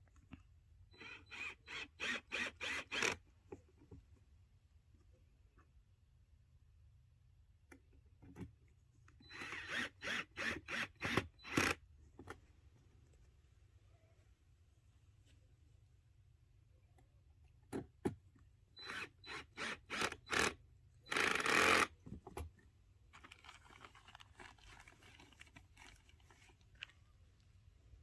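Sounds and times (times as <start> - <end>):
scratchy handling noise: 22.0 - 27.3.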